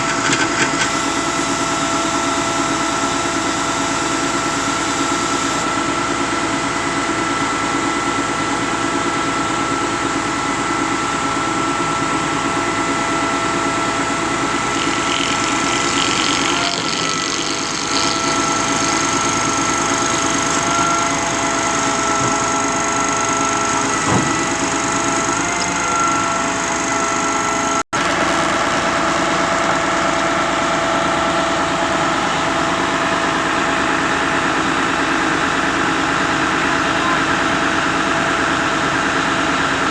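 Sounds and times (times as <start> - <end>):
pump engine running: 0.0 - 39.9
steady whine: 9.5 - 32.6.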